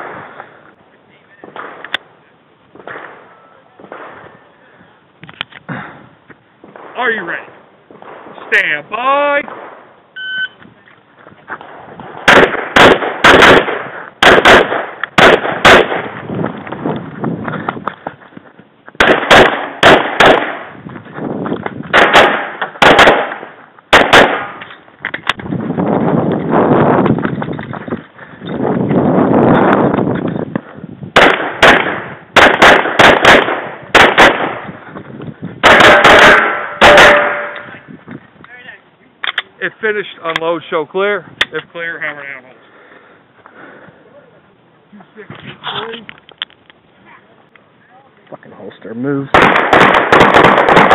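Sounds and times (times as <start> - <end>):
pistol shots: 1.4 - 2.0, 12.1 - 16.2, 19.0 - 20.8, 21.9 - 24.8, 31.2 - 34.7, 35.6 - 37.8, 49.3 - 50.9.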